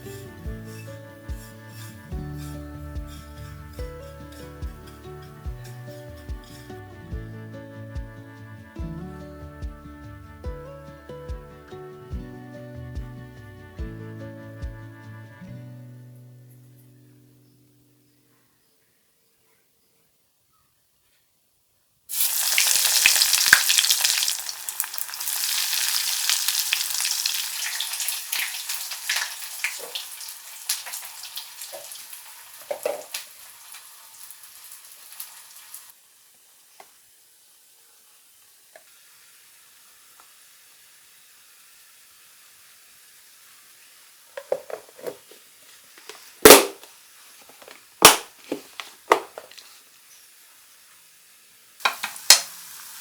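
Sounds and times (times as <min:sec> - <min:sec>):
food sizzling in hot oil: 0:00.0 - 0:06.8, 0:22.1 - 0:53.0.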